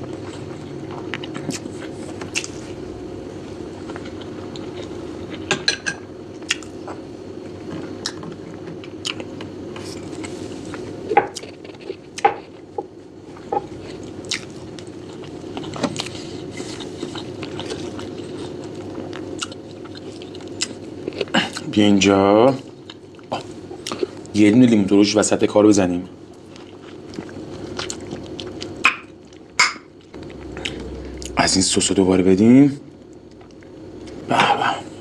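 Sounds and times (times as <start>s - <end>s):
chewing: 0.0s - 2.8s, 3.8s - 5.5s, 7.6s - 21.7s, 22.8s - 24.3s, 26.3s - 31.4s
low hum: 0.0s - 21.2s, 26.6s - 35.0s.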